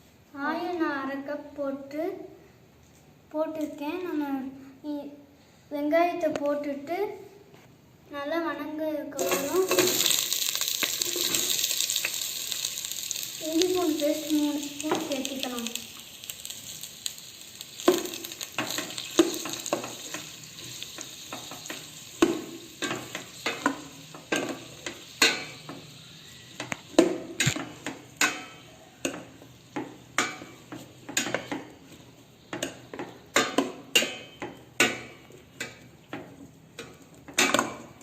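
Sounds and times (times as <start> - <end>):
spoon scraping a pan: 9.2 - 12.3, 17.8 - 37.9
onions sizzling in hot oil: 9.2 - 38.0.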